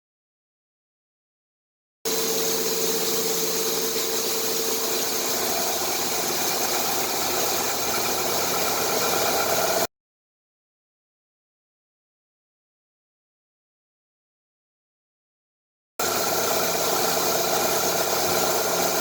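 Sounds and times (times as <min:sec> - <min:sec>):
milling machine cutting steel: 0:02.1 - 0:09.9, 0:16.0 - 0:19.0.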